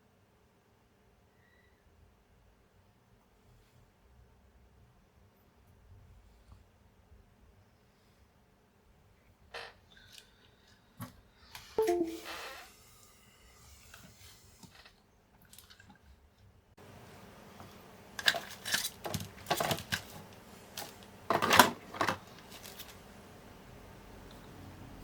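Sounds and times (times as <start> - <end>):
faint steady hiss: 16.8 - 25.0.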